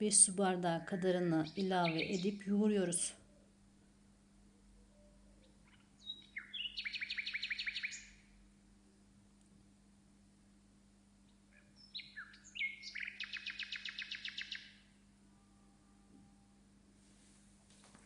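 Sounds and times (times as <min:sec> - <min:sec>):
songbird singing: 0:00.0 - 0:03.5, 0:04.6 - 0:08.4, 0:11.3 - 0:14.9.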